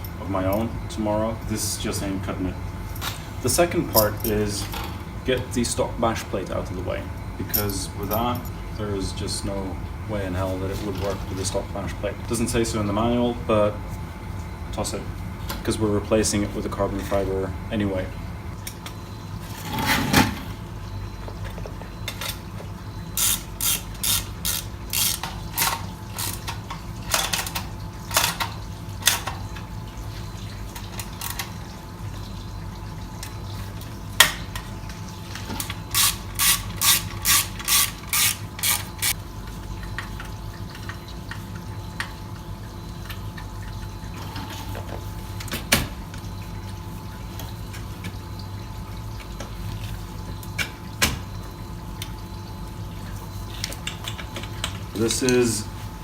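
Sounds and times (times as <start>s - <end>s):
socket ratchet clicking: 36.0s - 39.2s.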